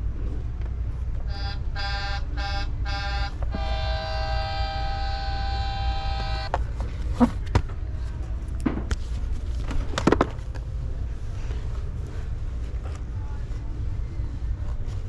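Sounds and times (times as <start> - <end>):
vehicle horn: 1.3 - 6.5.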